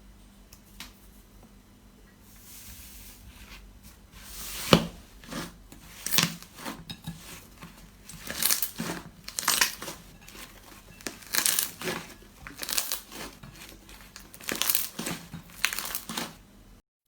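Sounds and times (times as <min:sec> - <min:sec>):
slime squishing and popping: 0:08.1 - 0:16.4.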